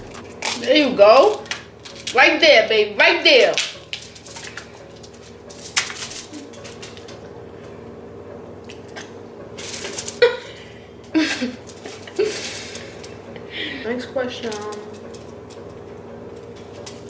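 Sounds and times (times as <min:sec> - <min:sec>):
crab shells cracking: 0:00.0 - 0:00.7, 0:03.5 - 0:07.2.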